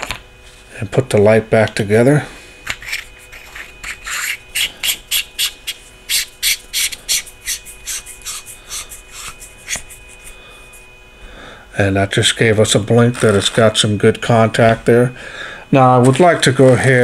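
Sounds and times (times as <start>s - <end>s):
flashlight threads scraping: 2.6s - 10.3s.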